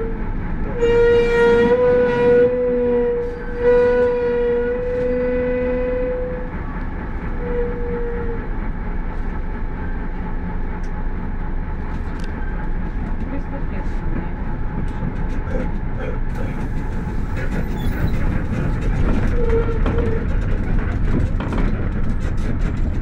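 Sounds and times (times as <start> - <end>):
engine rumble: 4.8 - 23.0.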